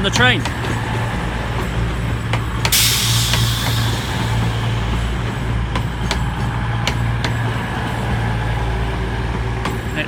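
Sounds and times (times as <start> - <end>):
diesel engines idling: 0.0 - 10.0
air hissing: 2.4 - 7.4.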